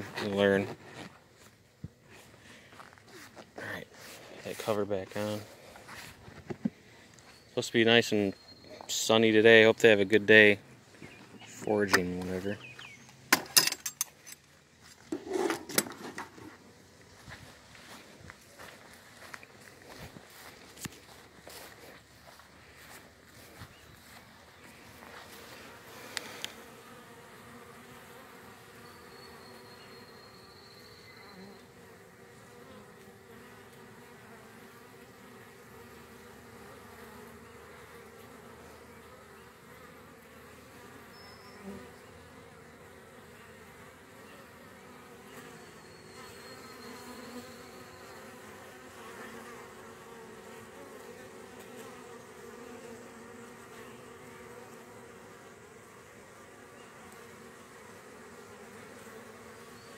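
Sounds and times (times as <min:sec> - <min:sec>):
bees buzzing: 0:15.1 - 0:59.9.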